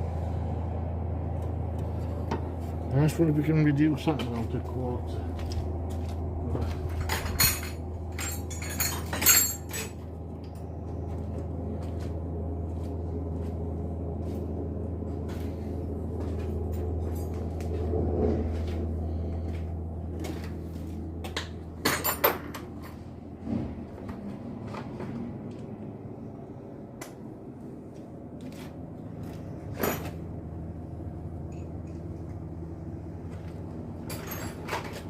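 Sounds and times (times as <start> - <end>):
steady low hum: 0.0 - 35.0
metal hand tools clinking: 7.0 - 10.0.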